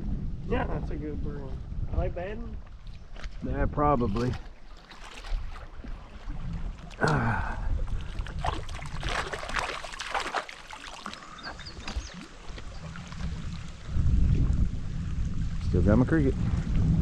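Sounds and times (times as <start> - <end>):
wind buffeting microphone: 0.0 - 10.0, 11.2 - 17.0
water sloshing and splashing: 2.6 - 15.7.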